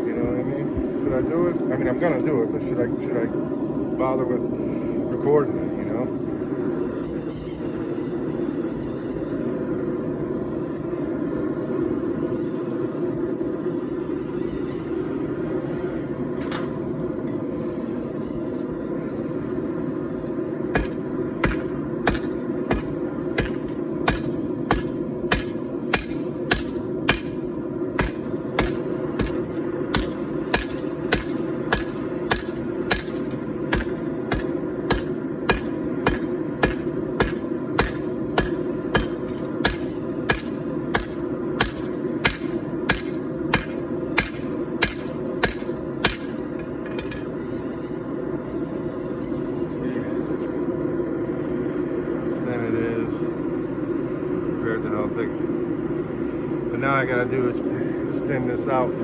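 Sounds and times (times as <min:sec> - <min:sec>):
hammer striking steel on anvil: 0:20.7 - 0:47.3.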